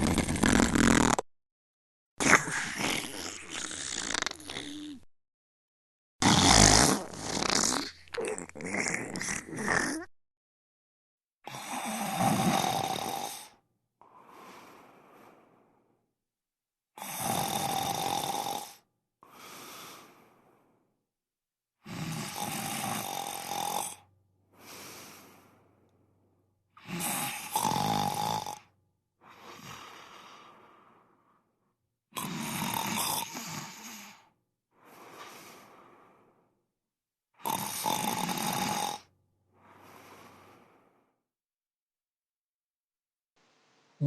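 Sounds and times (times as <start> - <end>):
person snoring: 0.0 - 1.2, 2.2 - 5.1, 6.2 - 10.1, 11.5 - 14.8, 17.0 - 20.4, 21.8 - 25.4, 26.8 - 28.7, 32.2 - 34.2, 37.4 - 41.1
breath out: 34.8 - 36.5.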